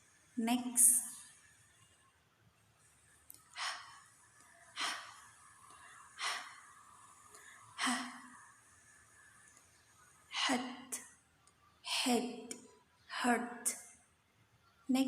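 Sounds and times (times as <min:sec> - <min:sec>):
woman breathing out h sounds: 0:03.5 - 0:04.2, 0:04.8 - 0:09.2.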